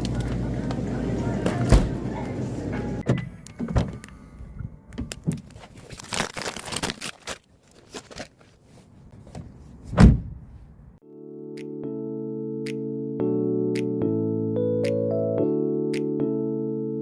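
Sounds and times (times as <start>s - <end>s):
rustling and crinkling: 5.0s - 10.8s
heavy thump: 9.9s - 10.4s.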